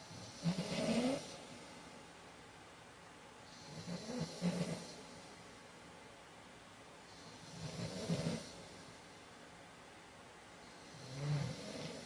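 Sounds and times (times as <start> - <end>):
man snoring: 0.1 - 1.4, 3.6 - 5.0, 7.3 - 8.6, 10.9 - 12.0
quiet breathing: 3.4 - 5.7, 7.0 - 9.4, 10.5 - 12.0.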